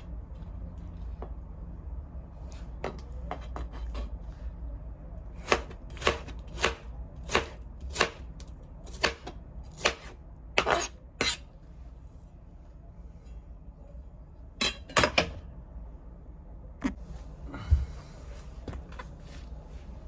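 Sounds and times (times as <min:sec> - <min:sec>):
low steady hum: 0:00.0 - 0:20.0
knife chopping on cutting board: 0:05.4 - 0:08.2.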